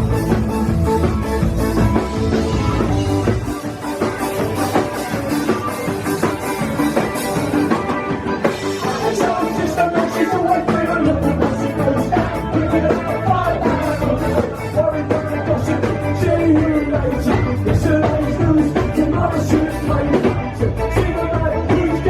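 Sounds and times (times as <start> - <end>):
drum beat: 0.0 - 20.1
bass guitar: 0.0 - 22.0
electric guitar: 0.0 - 22.0
keyboards: 0.0 - 22.0
person singing: 8.6 - 22.0.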